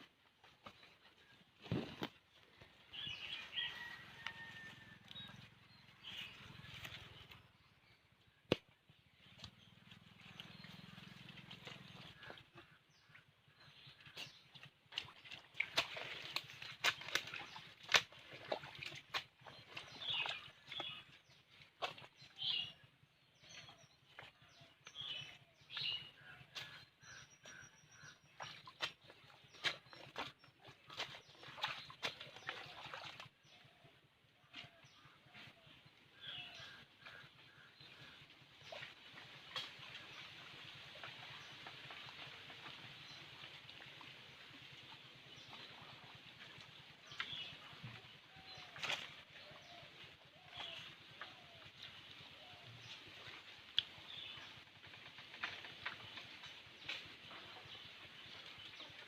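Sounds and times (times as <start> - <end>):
birds chirping: 0.1 - 59.0.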